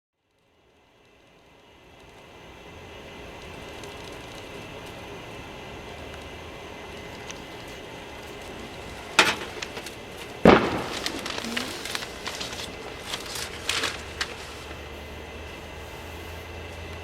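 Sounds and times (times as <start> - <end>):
rustling: 7.0 - 15.1.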